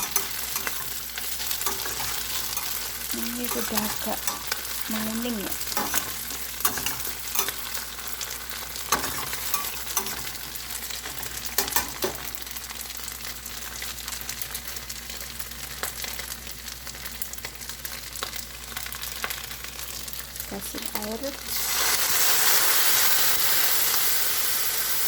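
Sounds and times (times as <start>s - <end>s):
spatula scraping a pan: 0.0s - 12.3s
food sizzling in oil: 0.0s - 25.0s.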